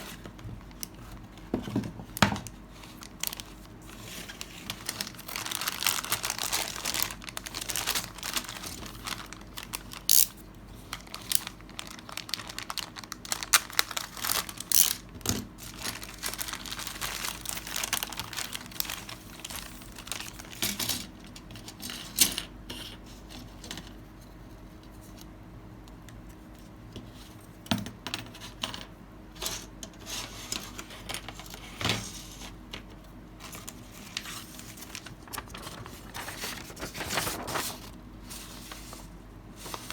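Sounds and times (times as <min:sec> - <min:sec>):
plastic packaging crinkling and tearing: 0:02.4 - 0:21.6, 0:33.5 - 0:38.0.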